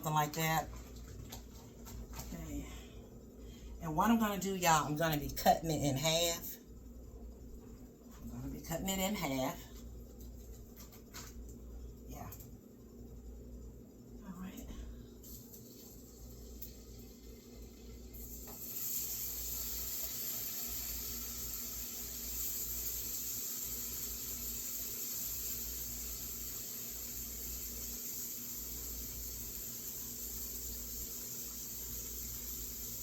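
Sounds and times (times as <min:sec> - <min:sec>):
bacon sizzling in a frying pan: 0:15.2 - 0:33.0.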